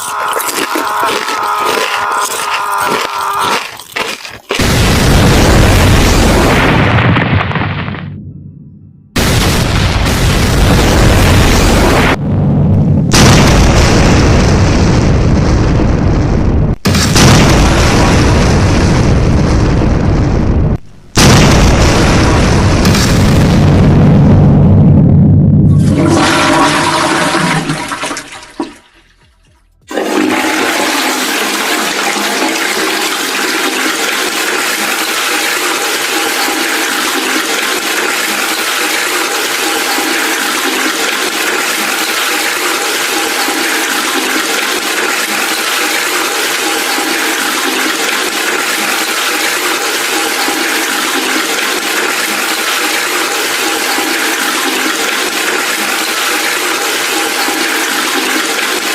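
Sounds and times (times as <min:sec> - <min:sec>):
loud low sound: 0:04.9 - 0:26.2
rushing water-like noise: 0:29.9 - 0:58.9.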